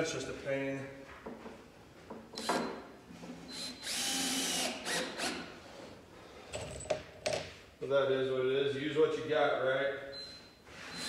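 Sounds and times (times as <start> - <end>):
power drill driving screw into wood: 2.4 - 2.8, 3.5 - 5.5.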